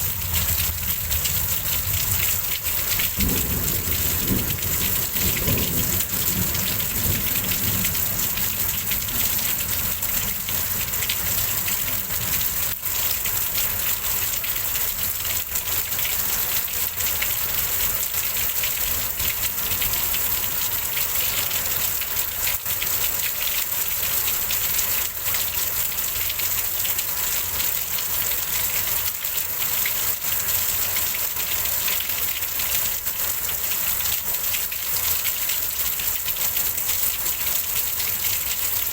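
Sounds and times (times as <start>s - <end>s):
low rumble of thunder: 0.0s - 12.5s
heavy rain pouring: 0.0s - 38.9s.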